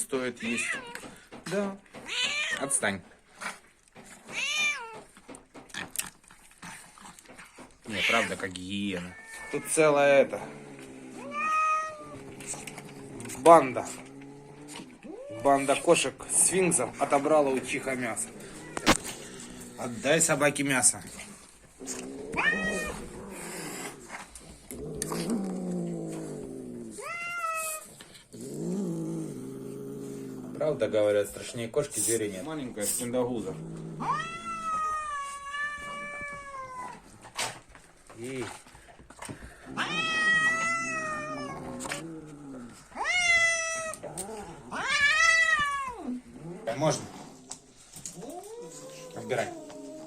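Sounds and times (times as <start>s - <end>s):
cat growling: 5.8s - 31.2s, 32.3s - 37.6s, 39.3s - 50.0s
cat yowling: 7.8s - 10.1s, 11.2s - 12.2s, 22.3s - 23.2s, 27.0s - 27.8s, 34.0s - 37.0s, 39.8s - 41.7s
cat high cries: 9.0s - 9.8s.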